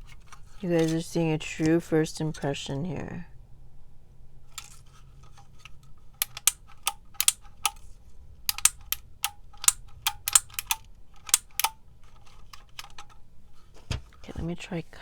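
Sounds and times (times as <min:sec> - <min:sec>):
label maker clicking: 0:06.2 - 0:07.8, 0:08.5 - 0:11.8.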